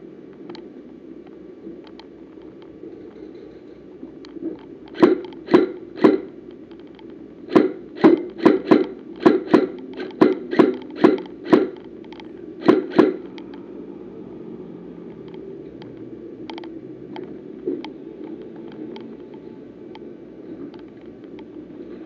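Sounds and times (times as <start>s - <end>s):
airsoft gun shots: 5.0s - 6.3s, 7.5s - 11.8s, 12.6s - 13.3s.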